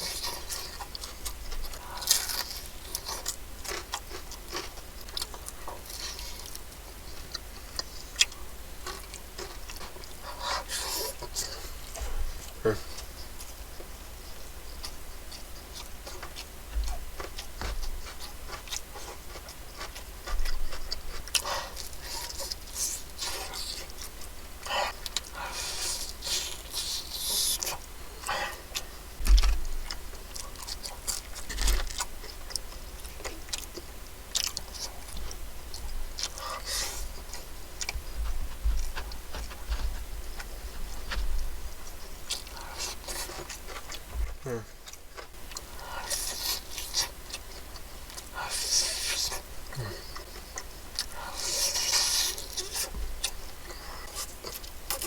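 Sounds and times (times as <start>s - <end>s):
chewing and crunching food: 0.0s - 55.0s.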